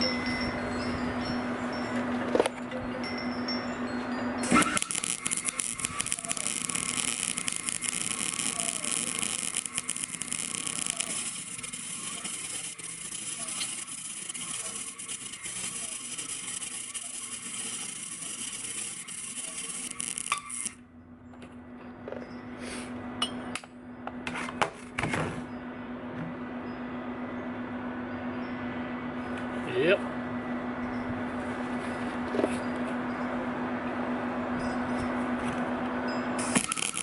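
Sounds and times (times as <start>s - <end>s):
welder arc crackling: 4.4s - 20.8s, 36.4s - 37.0s.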